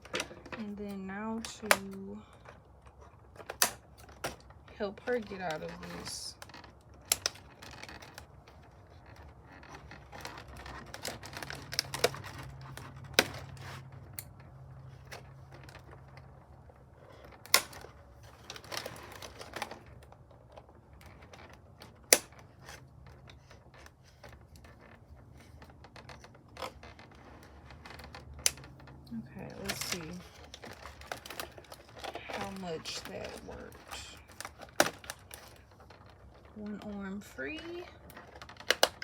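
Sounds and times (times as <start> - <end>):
light plastic rustling: 0.0 - 39.0
plastic packaging clicks and snips: 1.4 - 4.6, 6.4 - 8.4, 10.0 - 16.2, 17.2 - 25.0, 25.6 - 36.6, 38.0 - 39.0.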